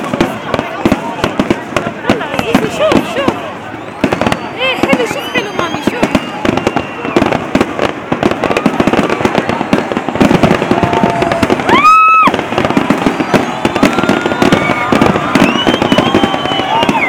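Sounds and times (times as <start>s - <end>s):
fireworks bangs and crackling: 0.0s - 17.0s
firework whistle: 2.5s - 17.0s.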